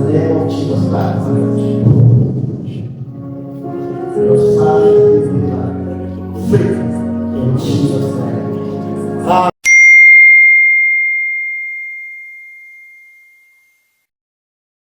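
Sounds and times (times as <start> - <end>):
gospel music with singing: 0.0 - 9.6
bell-like ding: 9.6 - 14.0.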